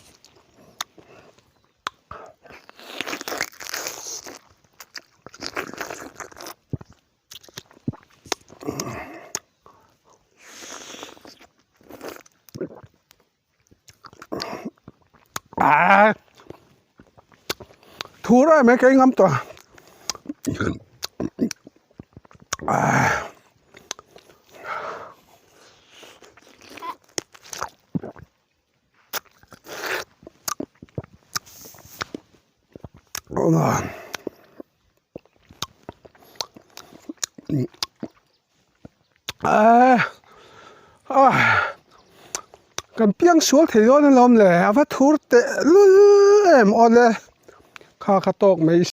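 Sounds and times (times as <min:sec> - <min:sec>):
person biting and chewing: 0:00.0 - 0:09.6, 0:10.5 - 0:18.2, 0:19.4 - 0:24.6, 0:25.5 - 0:28.4, 0:29.1 - 0:39.5, 0:41.9 - 0:43.0
small mouth clicks: 0:00.0 - 0:15.6, 0:16.2 - 0:18.3, 0:19.4 - 0:22.8, 0:23.4 - 0:24.6, 0:25.5 - 0:33.4, 0:34.0 - 0:39.5, 0:41.8 - 0:43.0.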